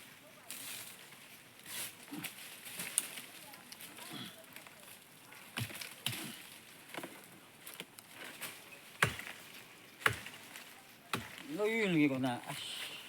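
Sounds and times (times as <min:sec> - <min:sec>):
sharp chopping strikes: 0:09.0 - 0:09.4, 0:10.0 - 0:10.4, 0:11.1 - 0:11.5.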